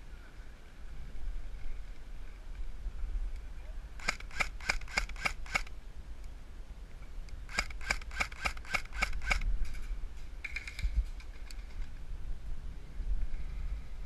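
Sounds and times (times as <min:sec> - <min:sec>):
airsoft rifle shots: 0:04.0 - 0:05.7, 0:07.5 - 0:09.4.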